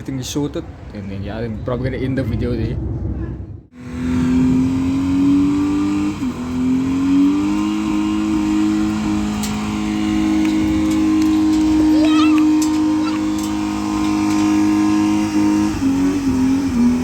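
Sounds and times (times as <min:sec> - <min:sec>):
car engine running: 0:03.7 - 0:17.0.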